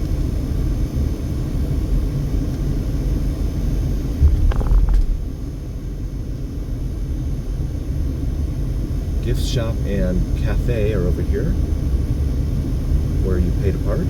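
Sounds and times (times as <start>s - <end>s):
car engine and tyres rumbling: 4.2s - 5.5s.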